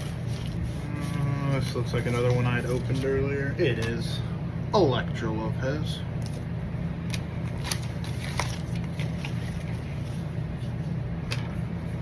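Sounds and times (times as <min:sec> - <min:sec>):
steady low hum: 0:00.0 - 0:12.0
trading cards clicking and scraping: 0:06.2 - 0:11.6.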